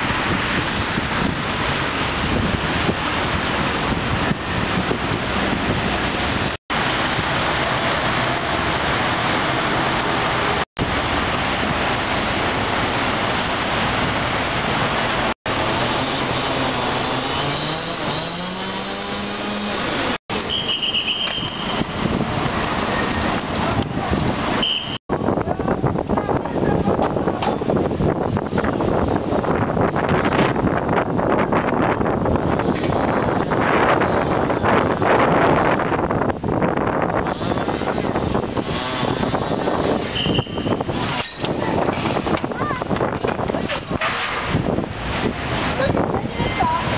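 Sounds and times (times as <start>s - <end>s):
road traffic noise: 0.0s - 46.9s
storm wind: 0.0s - 46.9s
vehicle engine speeding up: 1.8s - 20.2s.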